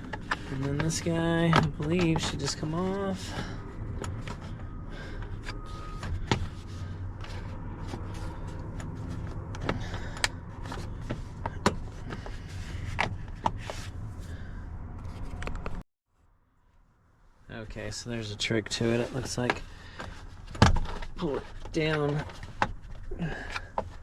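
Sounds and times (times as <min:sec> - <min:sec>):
steady low hum: 0:00.0 - 0:15.8.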